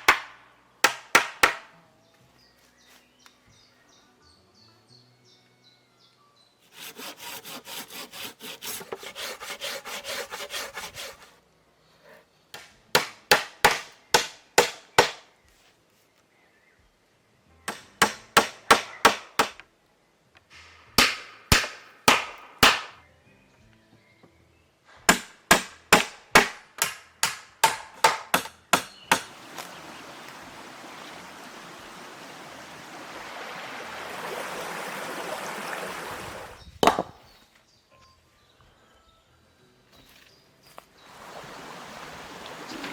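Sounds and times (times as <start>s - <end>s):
hand saw strokes: 6.7s - 11.4s
sharp blows on wood: 25.1s - 29.4s.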